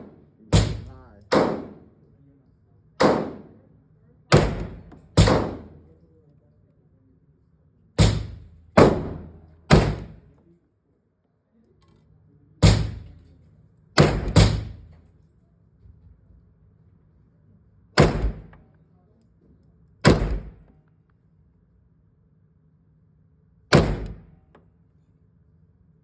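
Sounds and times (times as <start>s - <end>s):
gunshots: 0.0s - 1.9s, 3.0s - 3.6s, 4.3s - 5.8s, 8.0s - 10.2s, 14.0s - 14.8s, 18.0s - 18.6s, 20.0s - 20.7s, 23.7s - 24.4s.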